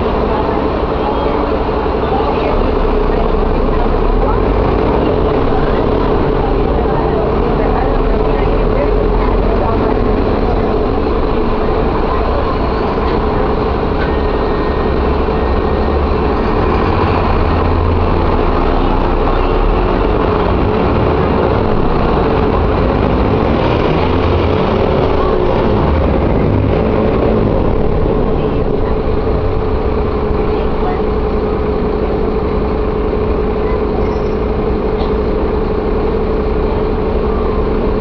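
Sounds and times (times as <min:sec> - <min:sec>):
diesel bus engine rumbling: 0:00.0 - 0:38.0.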